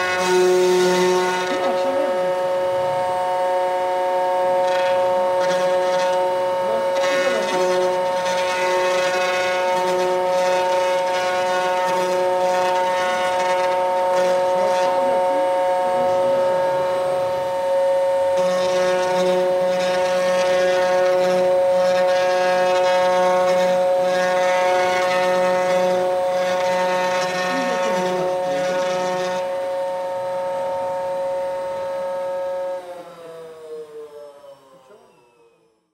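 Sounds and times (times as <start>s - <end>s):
rough pulsing noise: 0.0s - 33.0s
router spindle whine: 0.0s - 35.9s.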